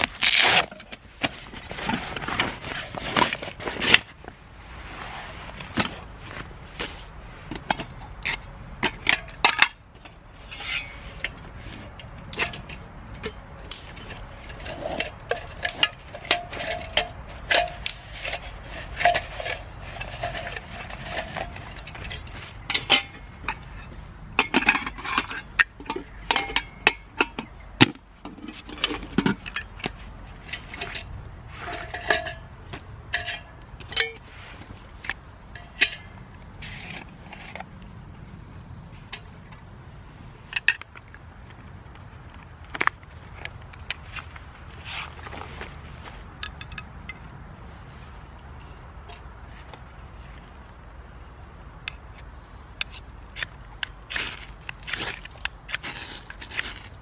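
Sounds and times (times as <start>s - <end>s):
metal camping gear clinking: 5.6s - 37.8s, 40.4s - 47.4s.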